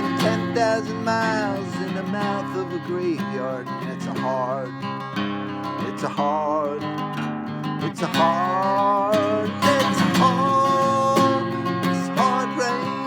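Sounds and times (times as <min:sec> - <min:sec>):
strummed acoustic guitar: 0:00.0 - 0:13.0
person singing with vibrato: 0:07.8 - 0:13.0.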